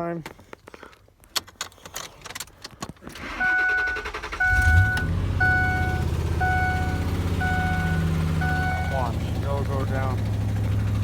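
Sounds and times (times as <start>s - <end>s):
engine cranking and idling: 3.1s - 11.0s
vehicle warning chime: 3.3s - 9.8s.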